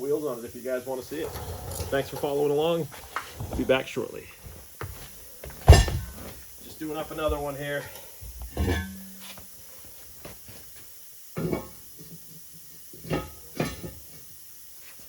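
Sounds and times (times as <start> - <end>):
metal knocks and clunks: 5.5 - 6.3.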